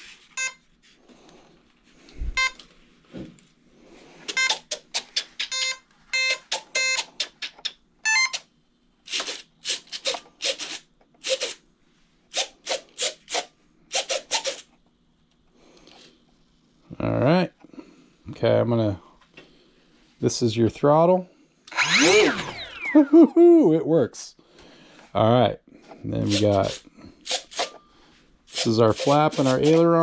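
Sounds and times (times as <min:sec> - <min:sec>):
short buzzing bursts: 0:04.2 - 0:11.6, 0:12.3 - 0:14.8, 0:21.7 - 0:23.1, 0:26.2 - 0:27.8
short electronic beeps: 0:04.3 - 0:04.7, 0:05.4 - 0:07.1.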